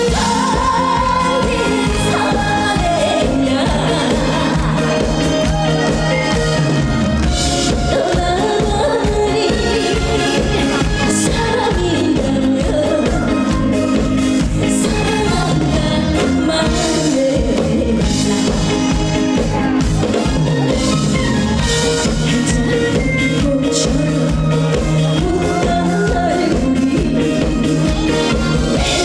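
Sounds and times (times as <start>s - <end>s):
band playing: 0.0s - 29.0s
drum kit beat: 0.0s - 29.0s
woman singing: 0.0s - 29.0s.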